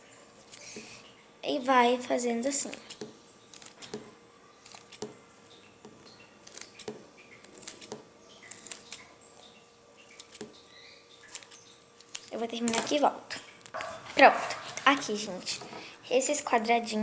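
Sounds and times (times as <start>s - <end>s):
scissors snipping foam: 2.8s - 4.1s.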